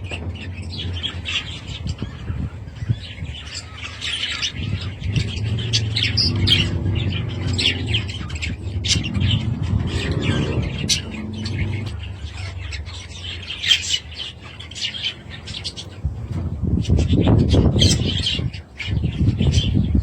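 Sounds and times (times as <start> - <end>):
budgerigars chirping: 0.0 - 20.0
low rumbling noise: 0.0 - 20.0.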